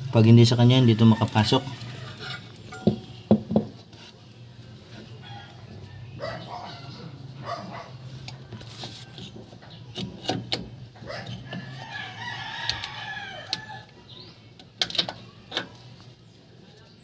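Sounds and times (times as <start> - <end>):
rooster crowing: 0.8 - 2.5, 11.1 - 13.9.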